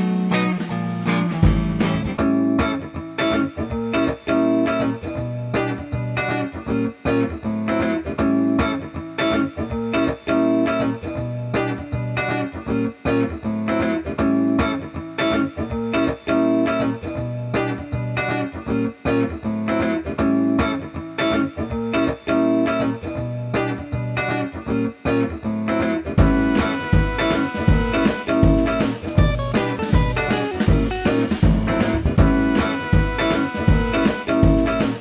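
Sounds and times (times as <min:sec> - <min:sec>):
plucked guitar tune: 0:00.0 - 0:35.0.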